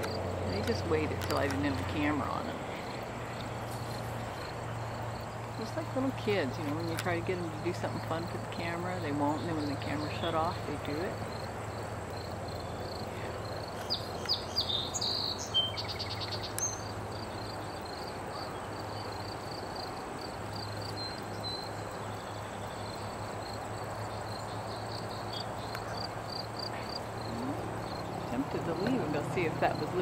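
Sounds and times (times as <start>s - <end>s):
low steady hum: 0.0s - 13.7s, 25.8s - 30.0s
insect chirring: 10.4s - 28.9s.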